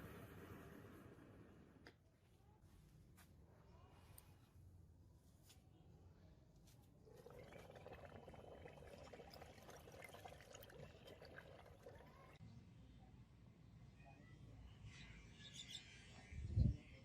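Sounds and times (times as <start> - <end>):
liquid pouring into container: 7.0 - 12.4.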